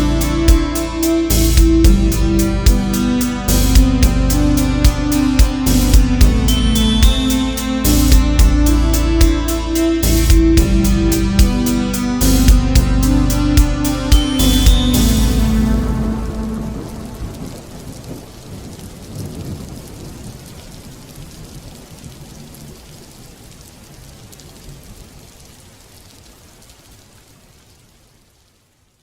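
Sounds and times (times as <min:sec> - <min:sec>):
rain falling: 0:00.0 - 0:29.0
low thunder rumbling: 0:15.1 - 0:22.5.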